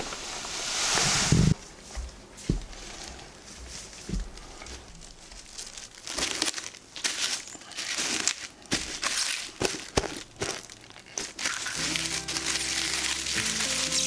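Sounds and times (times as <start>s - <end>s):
crinkling and rustling: 0.0s - 14.0s.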